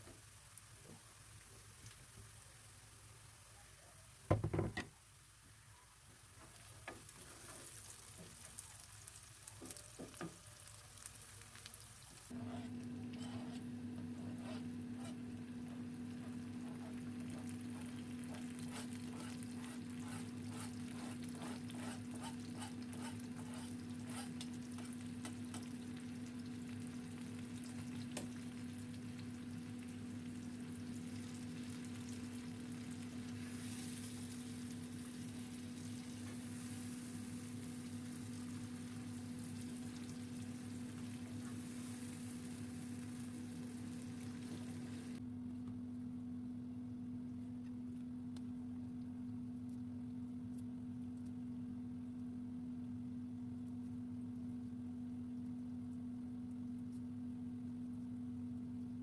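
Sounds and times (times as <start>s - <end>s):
food sizzling in a pan: 6.5s - 12.4s, 17.2s - 45.2s
steady hum: 12.3s - 59.0s.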